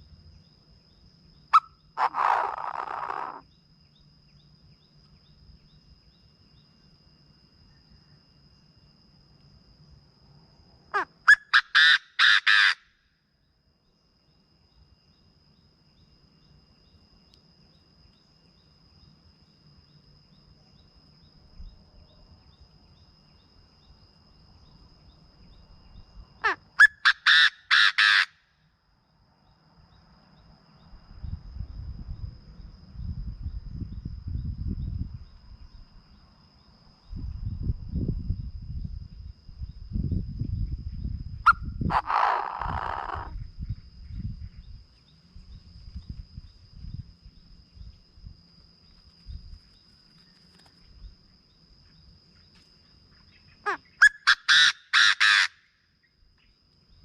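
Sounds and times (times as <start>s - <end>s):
faint high whine: 0.0s - 11.3s, 12.0s - 26.8s, 28.3s - 54.9s
bird harsh calls: 1.5s - 3.4s, 11.0s - 12.8s, 26.4s - 28.3s, 41.5s - 43.4s, 53.6s - 55.7s.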